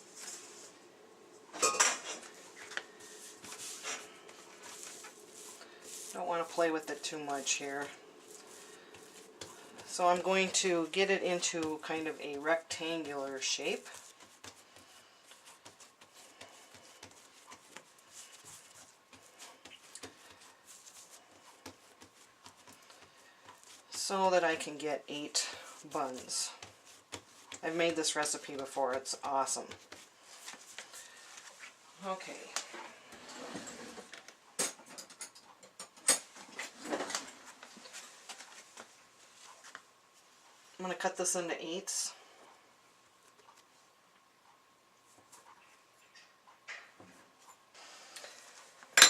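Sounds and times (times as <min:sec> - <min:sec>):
hands patting dough: 0:02.2 - 0:31.8.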